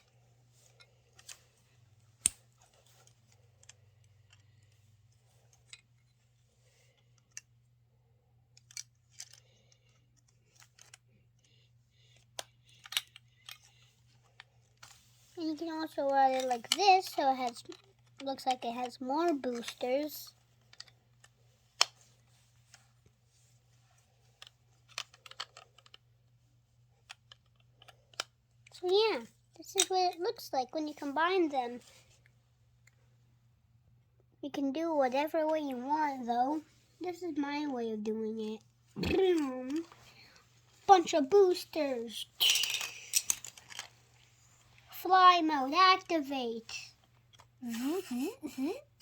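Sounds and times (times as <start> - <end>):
plastic toy parts clicking: 7.0 - 7.5, 8.5 - 15.0, 15.8 - 22.1, 24.4 - 26.0, 27.0 - 28.8, 42.4 - 43.9.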